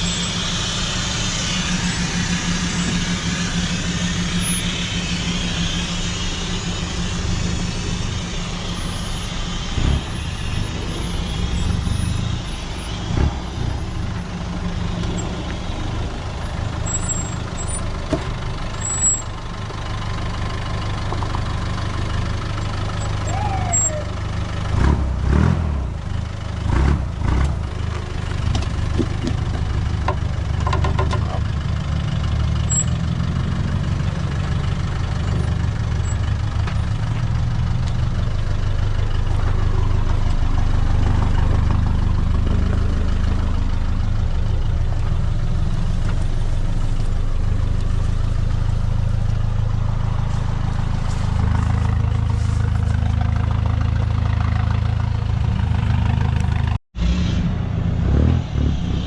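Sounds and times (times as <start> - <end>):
diesel engine droning: 0.0 - 59.0
sharp knocks and rattles: 28.5 - 31.5.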